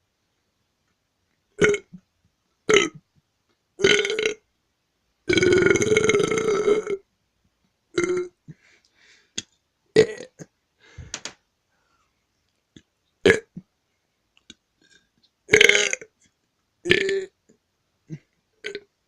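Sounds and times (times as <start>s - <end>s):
boy burping: 1.6s - 2.0s, 2.7s - 3.0s, 3.8s - 4.4s, 5.3s - 7.0s, 8.0s - 8.5s, 10.0s - 10.5s, 13.2s - 13.6s, 14.8s - 16.1s, 16.8s - 17.4s, 18.1s - 18.9s.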